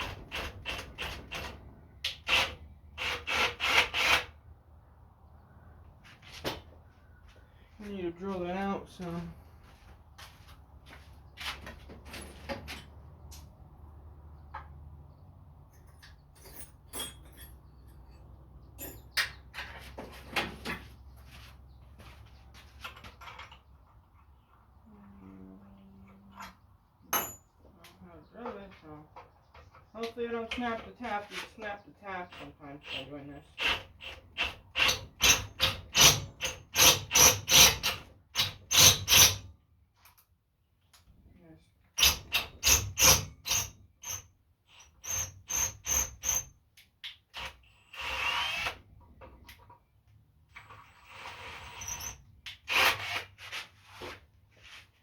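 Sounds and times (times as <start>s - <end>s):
metal tools clicking and scraping: 15.7s - 19.8s.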